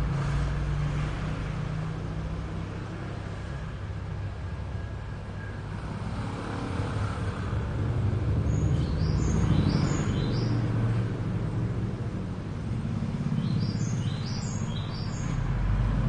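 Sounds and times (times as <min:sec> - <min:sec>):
bird chirping: 0:08.4 - 0:10.7, 0:13.3 - 0:15.4.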